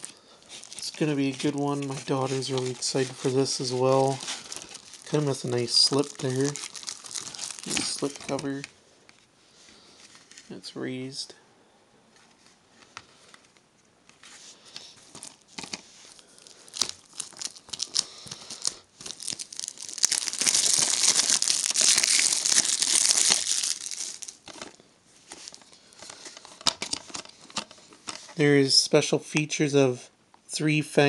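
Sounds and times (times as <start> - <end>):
plastic wrapping tearing and crinkling: 0.0 - 8.6, 15.0 - 26.0.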